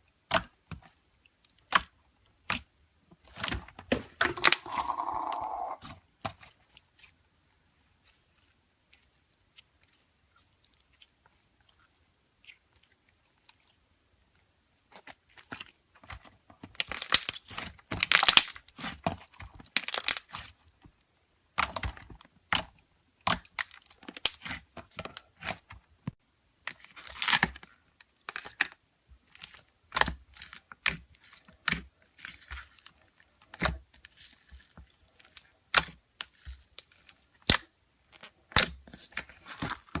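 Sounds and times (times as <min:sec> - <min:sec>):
slime crackling and popping: 0:16.7 - 0:20.6, 0:35.2 - 0:40.0.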